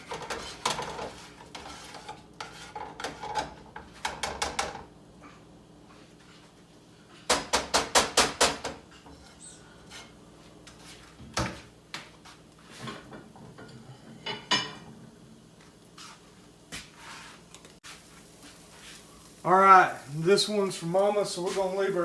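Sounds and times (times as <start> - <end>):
utensil tapping a frying pan: 0.0 - 4.9, 7.3 - 8.9.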